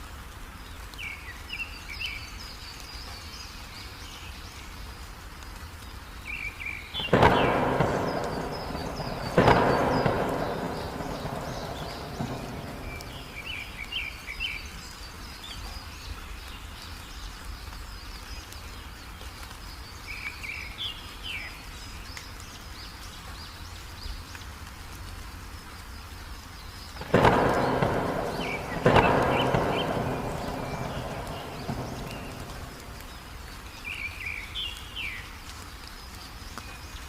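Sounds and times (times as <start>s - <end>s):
steady rain: 0.0s - 37.0s
songbird chirping: 0.6s - 24.6s, 25.6s - 37.0s
thunder rumble: 7.0s - 14.5s, 27.0s - 34.0s.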